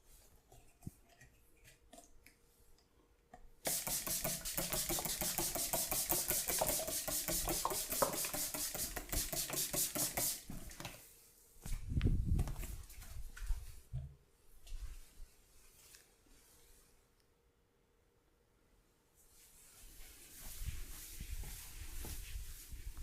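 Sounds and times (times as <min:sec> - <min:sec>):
hands massaging with rhythmic strokes: 0:03.7 - 0:11.8, 0:14.8 - 0:16.9, 0:19.2 - 0:23.0
faint soft touches: 0:14.6 - 0:17.2.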